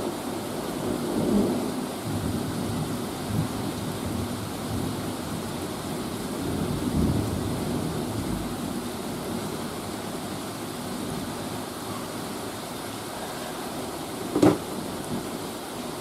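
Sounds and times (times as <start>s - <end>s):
heavy rain hissing: 0.0s - 16.0s
sharp knock: 14.4s - 14.6s.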